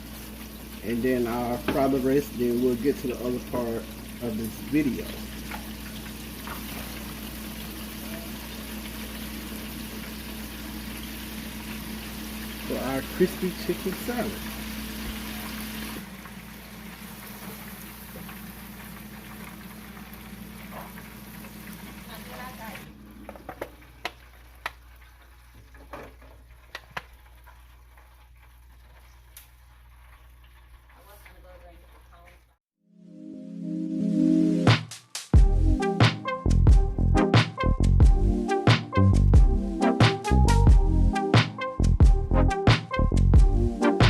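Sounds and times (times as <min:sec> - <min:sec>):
chicken deep-frying in oil: 0:00.0 - 0:32.6.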